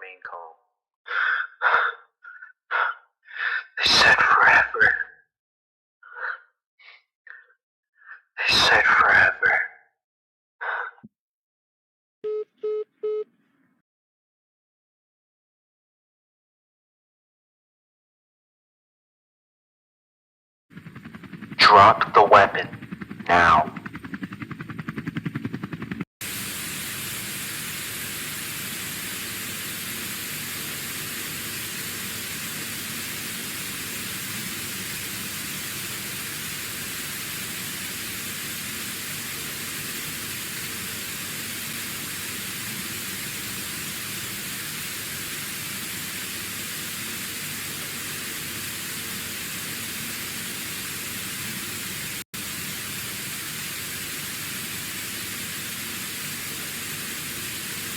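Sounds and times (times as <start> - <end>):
rapidly pulsing buzz: 20.8 - 26.5
static hiss: 26.2 - 57.9.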